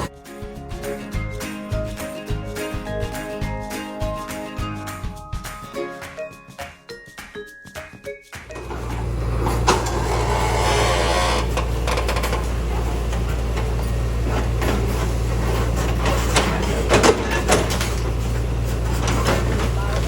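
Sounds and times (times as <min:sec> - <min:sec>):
backhoe diesel engine running: 0:08.5 - 0:20.0.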